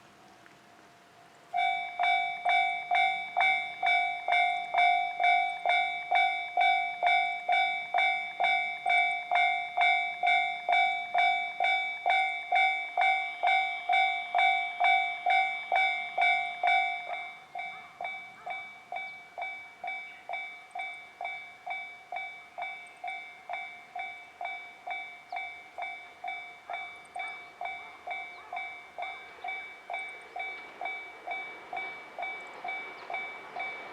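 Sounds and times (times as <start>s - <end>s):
level crossing bell clanging: 1.6s - 33.9s.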